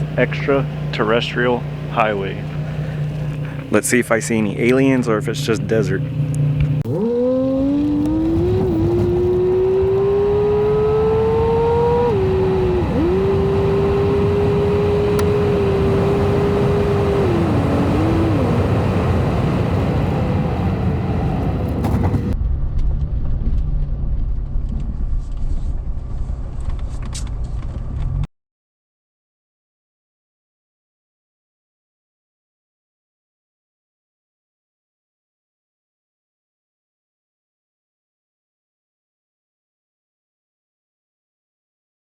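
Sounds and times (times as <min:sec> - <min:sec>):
car engine whine: 0:00.0 - 0:28.3
road and tyre rumble: 0:00.0 - 0:28.3.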